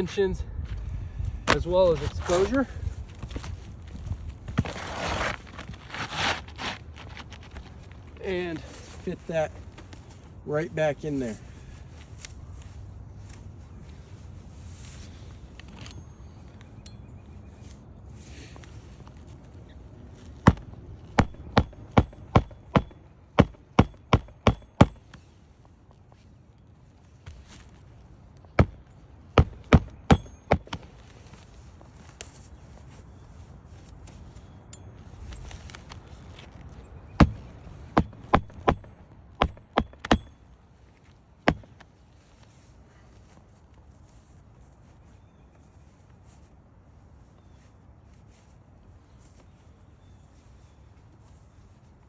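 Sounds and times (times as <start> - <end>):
hammer striking roofing nails: 20.5 - 25.1, 28.6 - 28.8, 29.4 - 30.8, 37.2 - 40.4.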